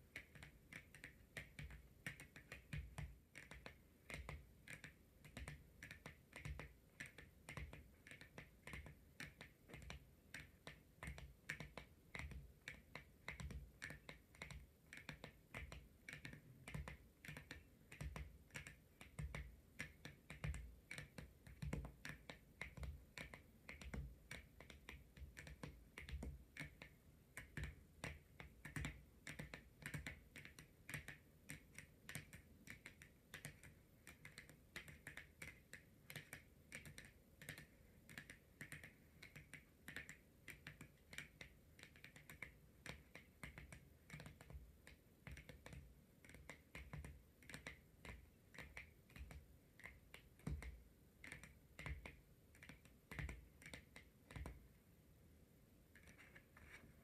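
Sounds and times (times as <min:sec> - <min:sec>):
fingernails tapping on a card: 0:00.0 - 0:54.6.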